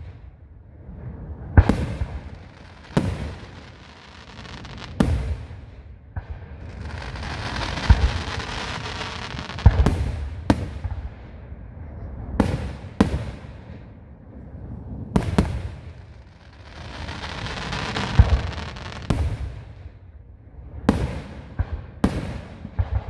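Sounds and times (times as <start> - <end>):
fireworks booming: 0.0 - 20.0, 20.8 - 23.0
fireworks crackling hiss: 0.9 - 5.9, 6.5 - 11.1, 14.4 - 19.9.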